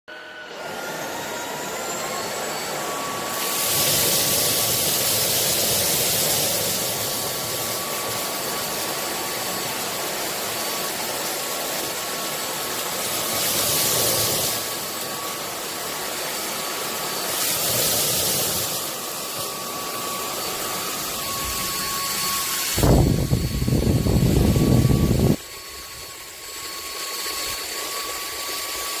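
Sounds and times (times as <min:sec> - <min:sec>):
vacuum cleaner running: 0:00.1 - 0:29.0.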